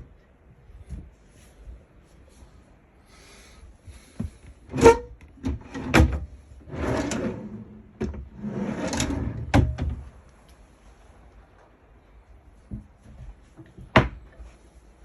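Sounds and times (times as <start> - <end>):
drawer sliding: 4.7 - 10.0.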